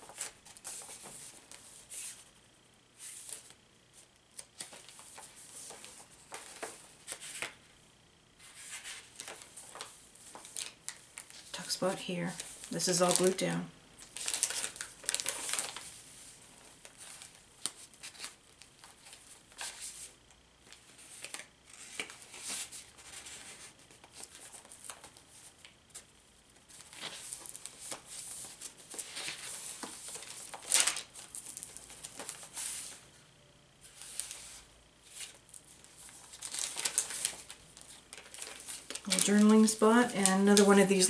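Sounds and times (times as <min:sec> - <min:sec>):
paper rustling and crinkling: 0:00.0 - 0:02.3, 0:04.3 - 0:07.6, 0:08.4 - 0:11.7, 0:12.3 - 0:20.1, 0:20.7 - 0:33.0, 0:33.8 - 0:41.0.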